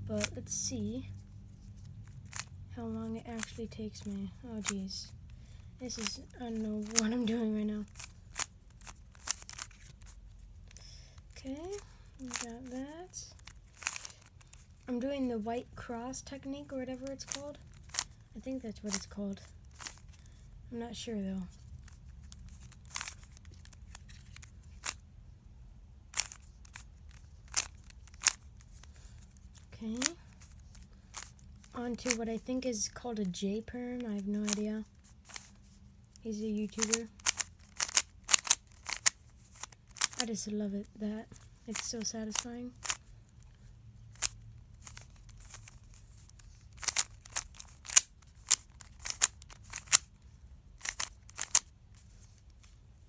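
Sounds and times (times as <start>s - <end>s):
rubik's cube clicking: 0.1s - 20.3s, 21.5s - 25.0s, 26.1s - 52.8s.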